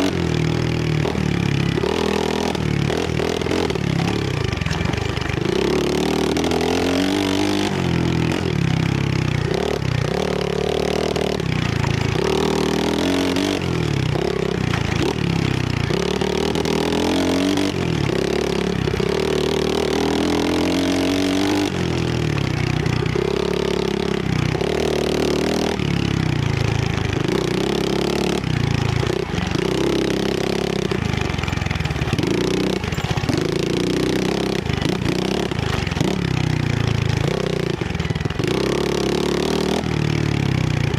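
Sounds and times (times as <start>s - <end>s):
motorbike engine revving: 0.0s - 40.9s.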